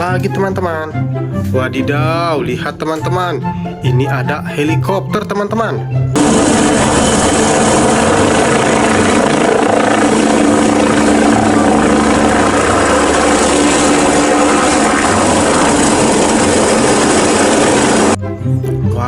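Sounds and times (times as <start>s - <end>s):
helicopter rotor whir: 6.2s - 18.2s.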